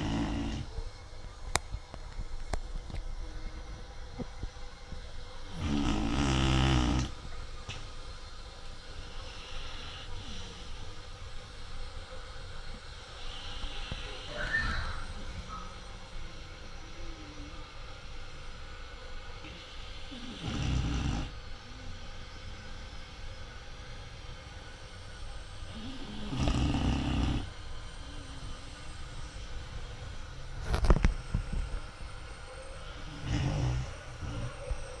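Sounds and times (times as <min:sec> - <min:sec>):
loud snoring: 0:00.0 - 0:00.8, 0:05.4 - 0:07.2, 0:19.4 - 0:21.5, 0:25.6 - 0:31.7, 0:32.8 - 0:35.0.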